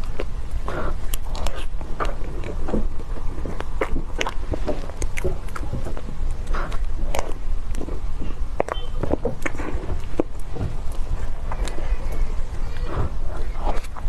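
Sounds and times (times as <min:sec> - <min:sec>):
steady low rumble: 0:00.0 - 0:14.0
wet chewing and mouth smacks: 0:00.0 - 0:14.0.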